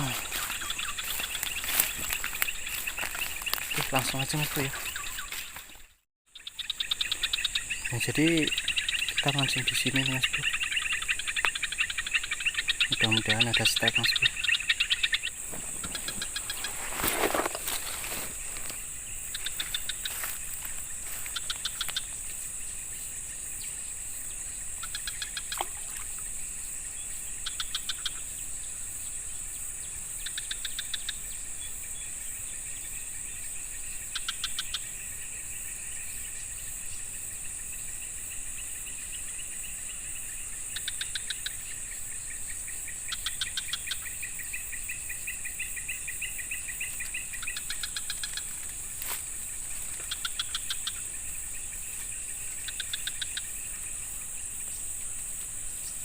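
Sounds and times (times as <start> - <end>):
rapid chirping bursts: 0.0 - 16.8, 18.3 - 22.2
trilling call: 0.0 - 22.1
high-pitched insect drone: 0.0 - 56.0.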